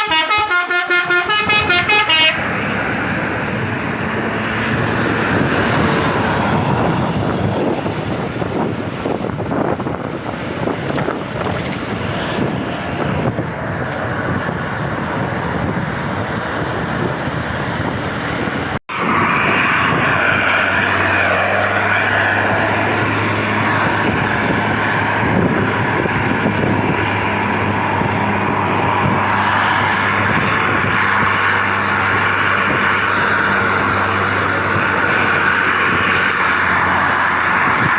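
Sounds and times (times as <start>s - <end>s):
bus engine: 0.0s - 37.9s
road noise: 0.0s - 37.9s.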